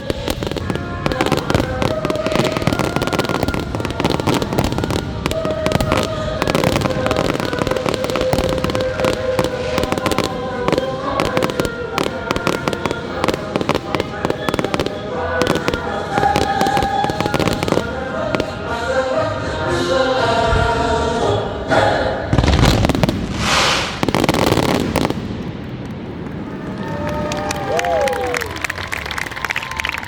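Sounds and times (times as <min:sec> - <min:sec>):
fireworks bursting and crackling: 0:00.0 - 0:19.3, 0:21.3 - 0:29.8
music with long held notes: 0:00.0 - 0:22.4.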